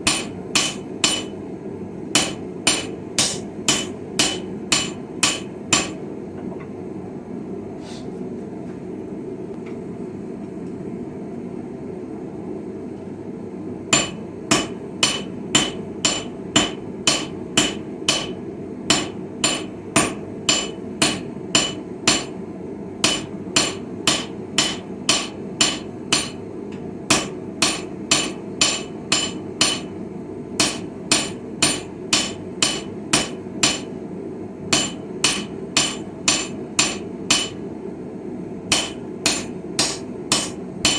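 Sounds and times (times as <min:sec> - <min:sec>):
hammer striking steel on anvil: 0:00.0 - 0:01.4, 0:02.1 - 0:06.1, 0:13.9 - 0:22.4, 0:23.0 - 0:30.0, 0:30.6 - 0:34.0, 0:34.7 - 0:37.7, 0:38.7 - 0:40.9
steady hum: 0:00.0 - 0:40.9.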